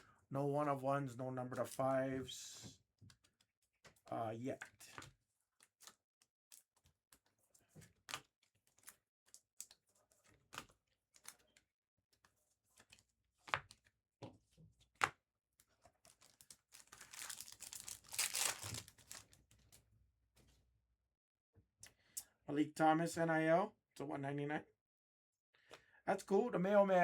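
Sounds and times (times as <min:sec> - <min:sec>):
packaging crinkling and tearing: 0:16.0 - 0:19.5.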